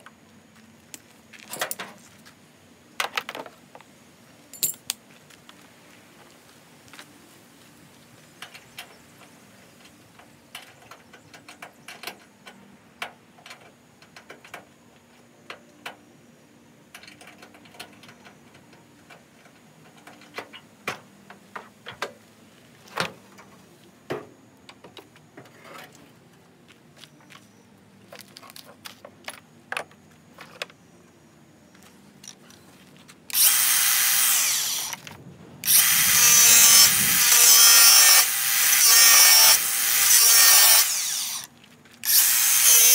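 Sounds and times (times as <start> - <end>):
tools and parts clicking: 0.9 - 2.0, 4.5 - 5.0
power tool running: 33.3 - 35.0, 35.6 - 42.9.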